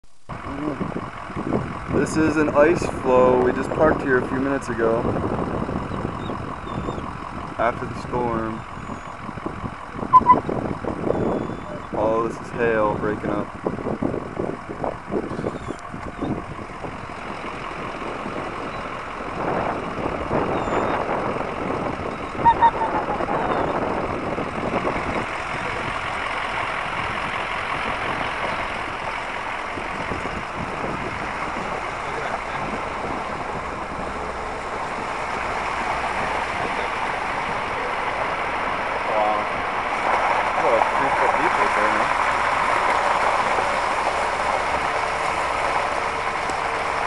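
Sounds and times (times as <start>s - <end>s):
floodwater rushing with ice: 16.4s - 47.0s.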